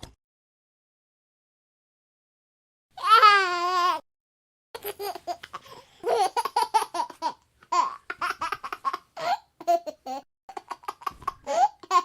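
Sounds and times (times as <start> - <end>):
baby giggling: 4.8 - 12.0.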